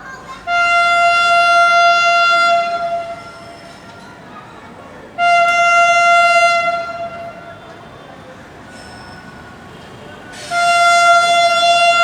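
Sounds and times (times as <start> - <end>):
locomotive horn blast: 0.5 - 3.4, 5.2 - 7.8, 10.4 - 12.0.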